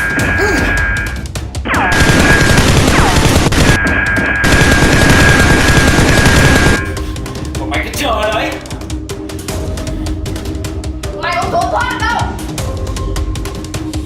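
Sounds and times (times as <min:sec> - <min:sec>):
action background music: 0:00.0 - 0:14.0
gunfire sound effects: 0:01.7 - 0:06.8.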